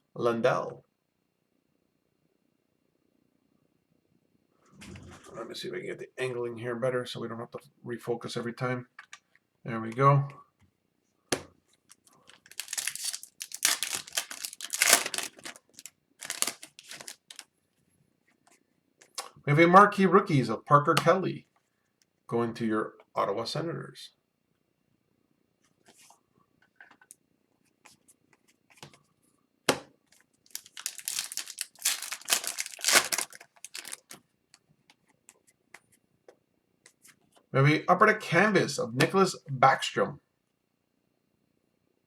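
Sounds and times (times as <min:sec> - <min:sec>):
wrapper crinkling and tearing: 0:12.2 - 0:17.5, 0:30.4 - 0:34.2.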